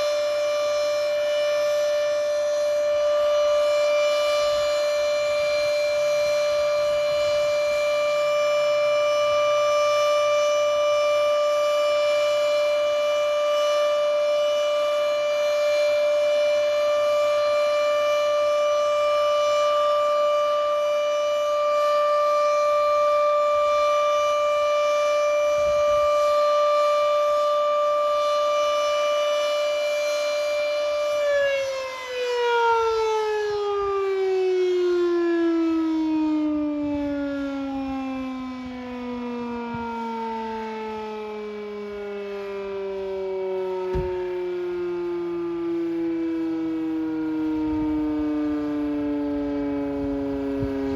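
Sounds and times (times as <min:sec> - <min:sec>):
warning siren winding down: 0:00.0 - 0:50.9.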